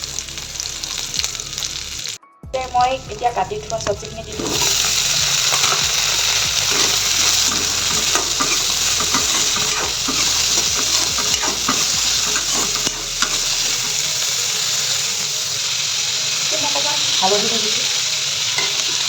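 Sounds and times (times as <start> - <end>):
vegetables sizzling in hot oil: 0.0 - 2.2, 3.2 - 19.0
utensil scraping pan: 4.3 - 15.3.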